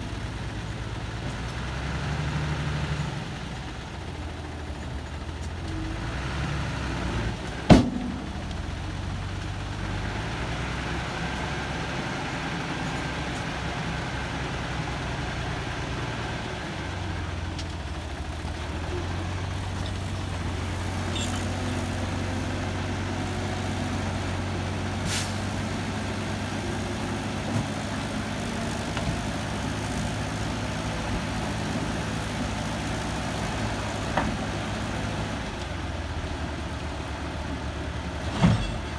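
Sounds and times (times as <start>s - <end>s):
heavy diesel engine running: 0.0s - 38.9s
sharp loud knock: 7.7s - 8.3s.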